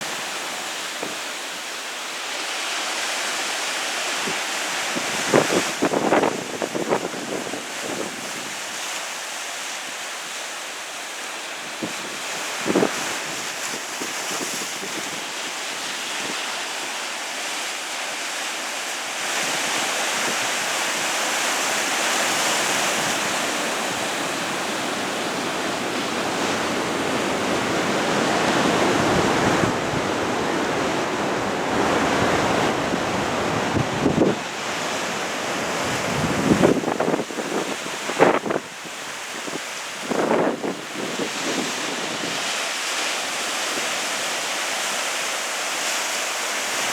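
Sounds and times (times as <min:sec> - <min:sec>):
waves on water: 0:00.0 - 0:46.9
wind rushing over microphone: 0:19.4 - 0:42.5.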